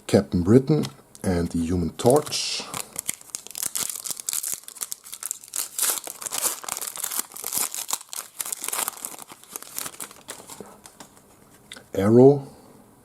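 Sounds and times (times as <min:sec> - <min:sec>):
foil wrapper crinkling and tearing: 0:02.0 - 0:11.3.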